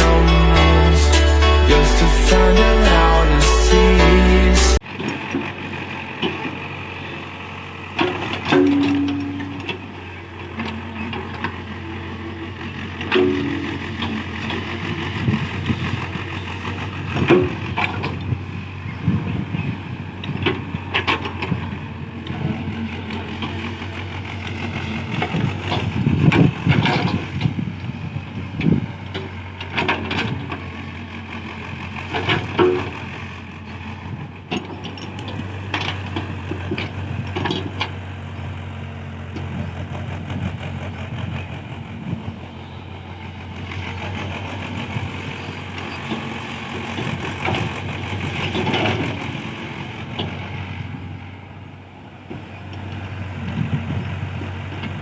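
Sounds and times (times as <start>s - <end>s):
excavator diesel engine running: 0.0s - 55.0s
clunks and knocks: 8.0s - 9.9s, 13.0s - 16.2s, 17.0s - 18.4s, 19.2s - 27.9s, 28.5s - 30.7s, 32.0s - 33.1s, 34.5s - 38.0s.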